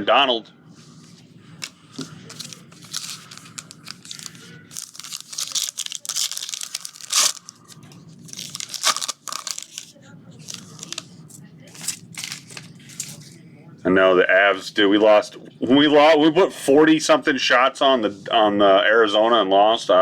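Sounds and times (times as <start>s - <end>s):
cards being handled: 1.0s - 13.4s
wrapper crinkling and tearing: 2.3s - 13.2s.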